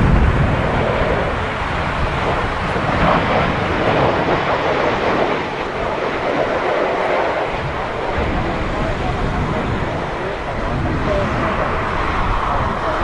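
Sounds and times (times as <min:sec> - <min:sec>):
jet engine noise: 0:00.0 - 0:13.0
wind buffeting microphone: 0:00.0 - 0:13.0.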